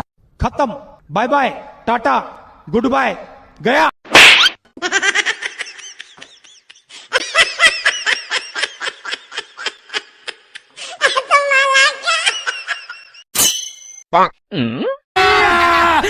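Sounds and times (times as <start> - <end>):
high-pitched comic laughter: 4.8 - 13.2.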